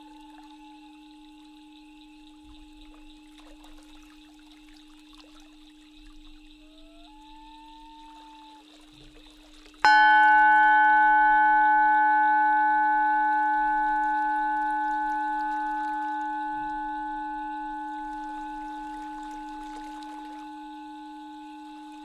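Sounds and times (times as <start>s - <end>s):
singing bowl ringing: 0.0s - 8.9s, 9.8s - 22.0s
steady low drone: 10.0s - 22.0s.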